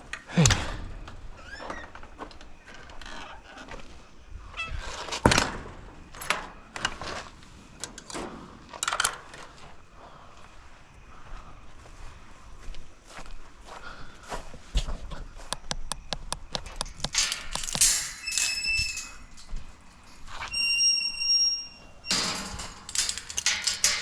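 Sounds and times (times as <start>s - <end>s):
sharp knocks and clatters: 15.0s - 19.2s.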